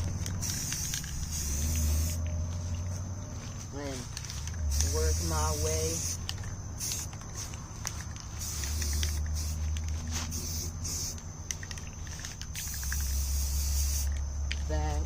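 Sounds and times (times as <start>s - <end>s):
aerosol spray can hissing: 0.2s - 2.2s, 4.7s - 14.2s.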